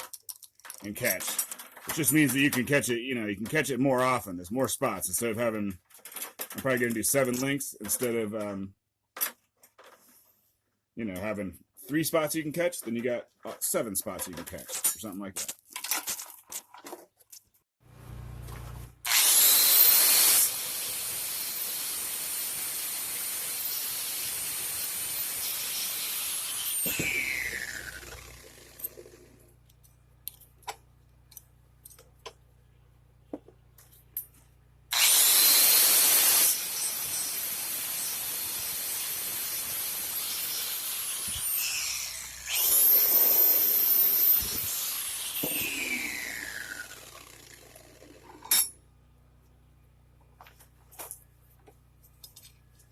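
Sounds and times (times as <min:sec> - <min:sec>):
electric grinder on metal: 0:19.1 - 0:29.5, 0:34.9 - 0:48.7.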